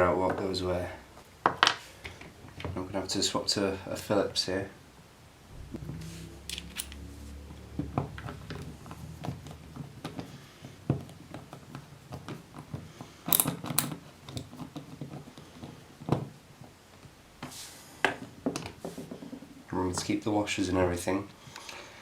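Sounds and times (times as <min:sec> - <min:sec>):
low hum: 0:04.8 - 0:11.8
screwdriver and metal parts clicking: 0:13.3 - 0:14.0.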